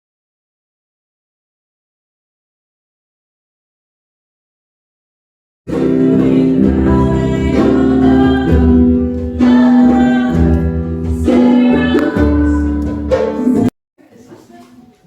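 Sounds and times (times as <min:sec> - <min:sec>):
choir singing gospel song: 0:05.7 - 0:13.7.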